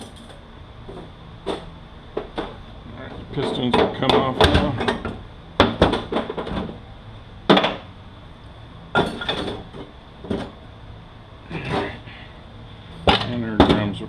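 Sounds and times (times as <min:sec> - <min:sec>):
metal parts clanking: 0:09.0 - 0:10.5.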